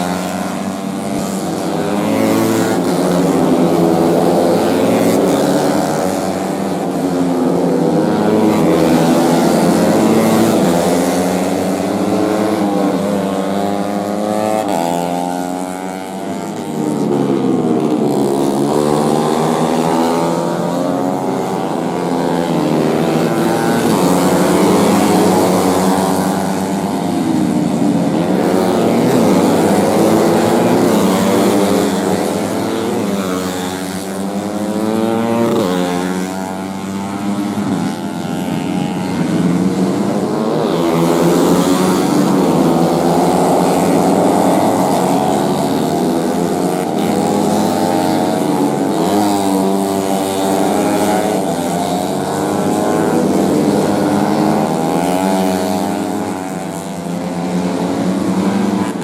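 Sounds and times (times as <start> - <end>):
racing motorcycles revving: 0.0 - 59.0.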